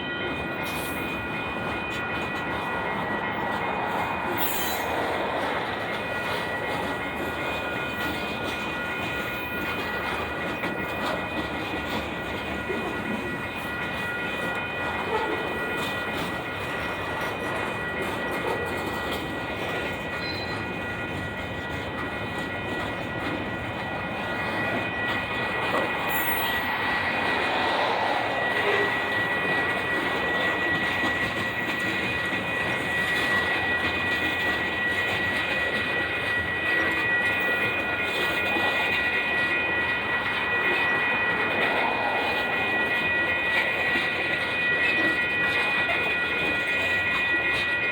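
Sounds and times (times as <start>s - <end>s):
train cars rumbling past: 0.0s - 47.9s
high-pitched wheel squeal: 24.2s - 35.5s.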